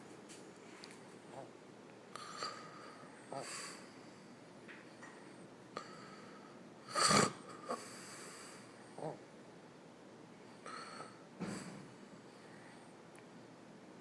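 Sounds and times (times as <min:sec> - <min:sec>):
snoring snorts: 0:06.9 - 0:07.9.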